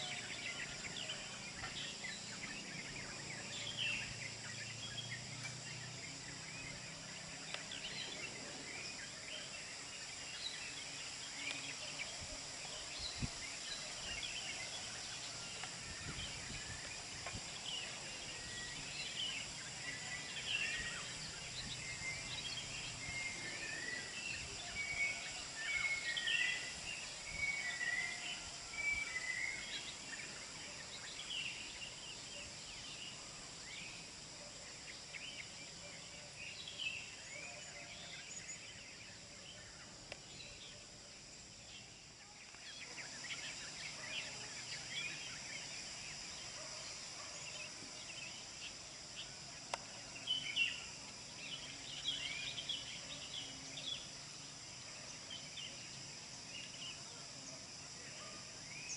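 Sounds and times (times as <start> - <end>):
birds chirping and whistling: 13.0 - 30.4.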